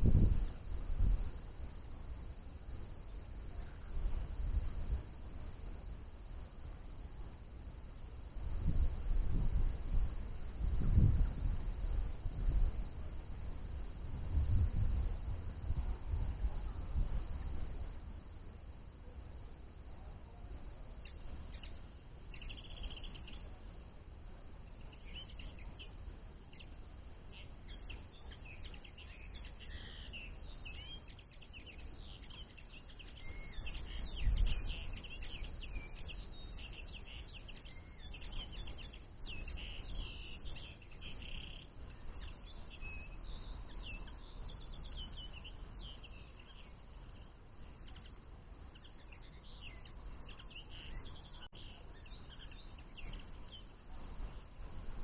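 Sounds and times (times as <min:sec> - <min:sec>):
linnets twittering: 0:18.8 - 0:54.6.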